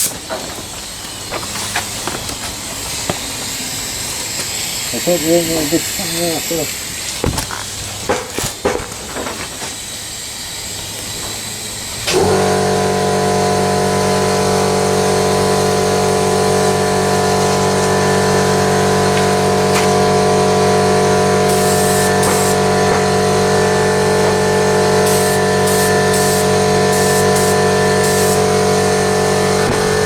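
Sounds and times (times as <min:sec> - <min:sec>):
air hissing: 0:00.0 - 0:08.6, 0:09.6 - 0:30.0
air compressor motor humming: 0:00.0 - 0:30.0
short high air hisses: 0:21.4 - 0:22.8, 0:25.0 - 0:28.8.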